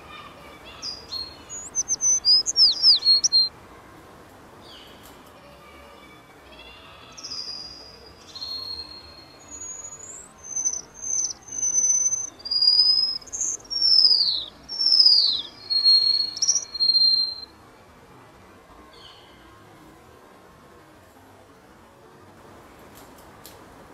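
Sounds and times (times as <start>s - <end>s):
songbird singing: 0.0s - 3.5s, 7.0s - 17.5s.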